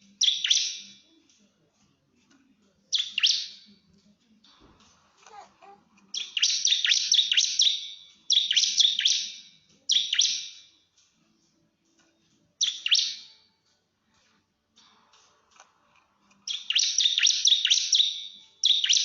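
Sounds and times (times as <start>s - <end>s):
bird singing rapid sharp notes: 0.1s - 1.0s, 2.9s - 3.7s, 6.1s - 10.7s, 12.6s - 13.4s, 16.5s - 19.0s.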